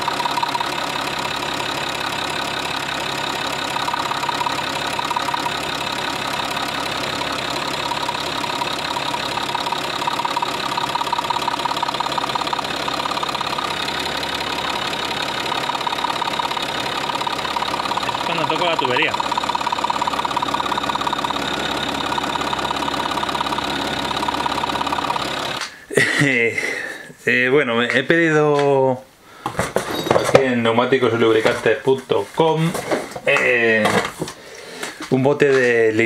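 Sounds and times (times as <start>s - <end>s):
diesel engine idling: 0.0s - 25.8s
injector tapping: 0.0s - 25.8s.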